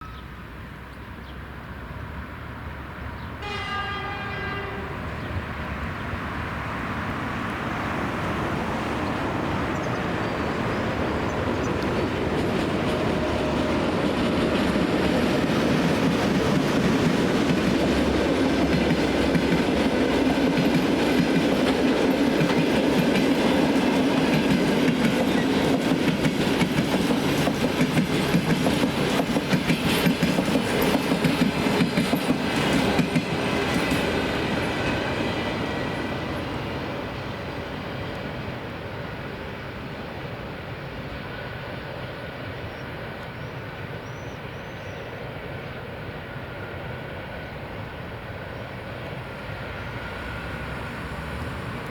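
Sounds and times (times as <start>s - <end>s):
train rumbling past: 0.0s - 51.9s
train wheels clickety-clack: 9.0s - 36.8s.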